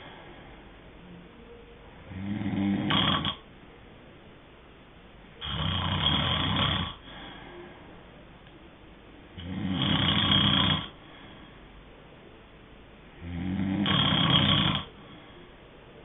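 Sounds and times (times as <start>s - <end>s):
person snoring: 2.1s - 3.4s, 5.4s - 7.4s, 9.4s - 11.0s, 13.2s - 15.0s.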